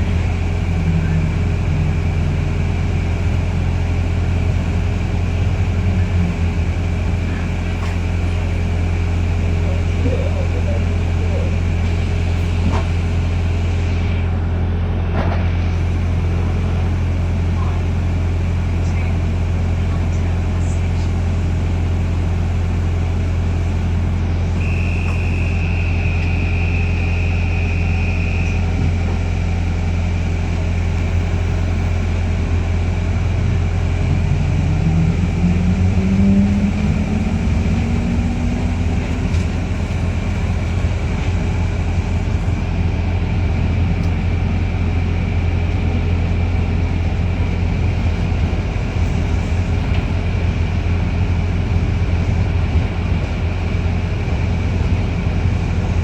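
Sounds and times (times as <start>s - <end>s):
whine rising in pitch: 0.0s - 3.7s, 11.5s - 14.5s, 23.7s - 30.2s, 33.2s - 39.9s
bus drivetrain drone: 0.0s - 56.0s
high whistling tone: 24.6s - 28.6s.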